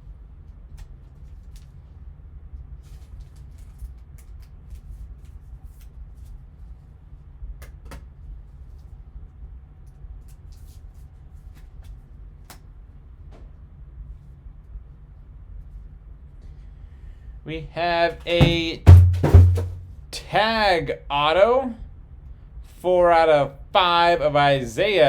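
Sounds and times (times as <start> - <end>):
sharp taps: 18.4 - 19.8.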